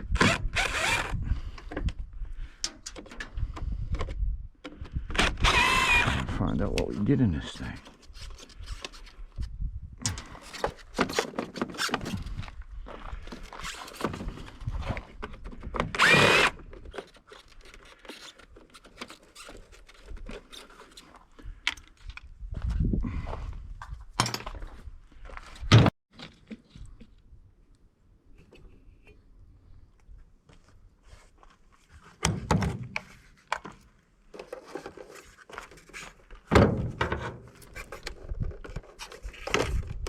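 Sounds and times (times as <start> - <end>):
cordless drill whirring: 0.2 - 1.2, 5.2 - 6.3, 15.9 - 16.6.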